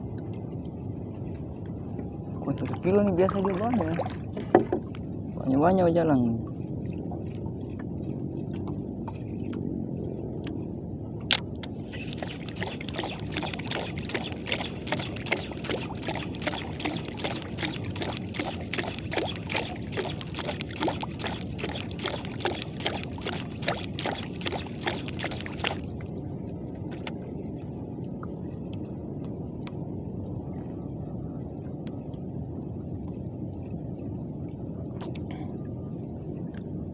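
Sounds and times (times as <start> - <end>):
low rumble of boat and sea: 0.0 - 36.9
fishing reel whirring and ticking: 11.9 - 25.8.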